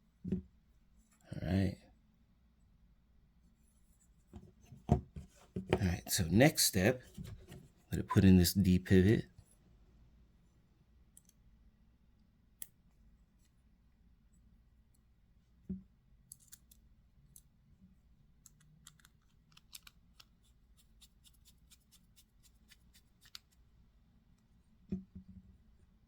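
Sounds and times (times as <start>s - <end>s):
small metal parts clicking: 18.4s - 20.3s.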